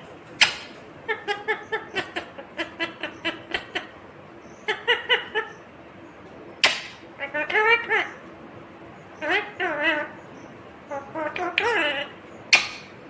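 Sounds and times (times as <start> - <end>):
parakeet chattering: 0.3 - 5.8, 6.6 - 8.4, 9.0 - 13.0
sharp click: 0.4 - 0.7, 6.6 - 7.0.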